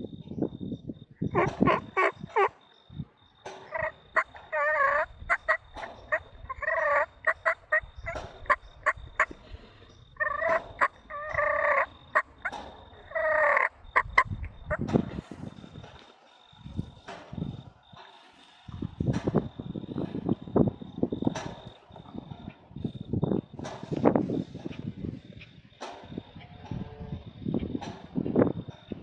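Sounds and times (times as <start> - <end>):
turkey gobbling: 1.3 - 2.6, 3.5 - 9.4, 10.2 - 14.9.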